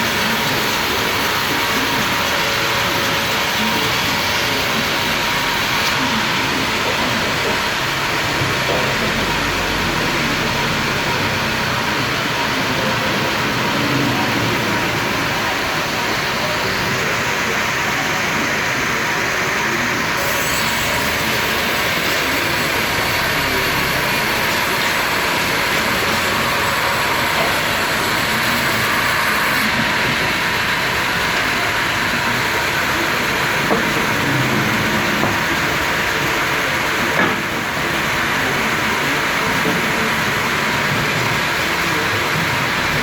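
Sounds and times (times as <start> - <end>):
sawmill machinery running: 0.0 - 43.0.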